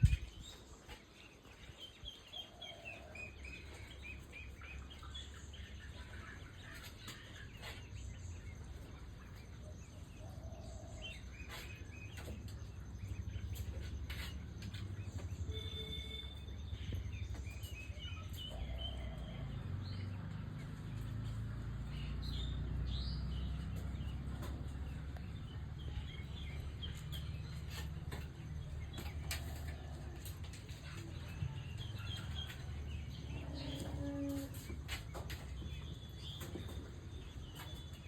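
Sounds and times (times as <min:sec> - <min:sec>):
steady low rumble: 0:00.0 - 0:00.5
birds chirping: 0:00.0 - 0:38.0.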